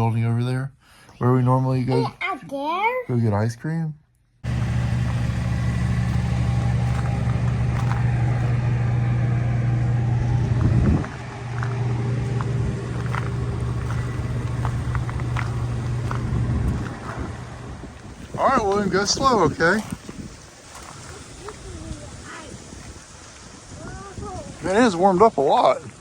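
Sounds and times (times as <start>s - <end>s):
vehicle engine drone: 4.4s - 19.5s.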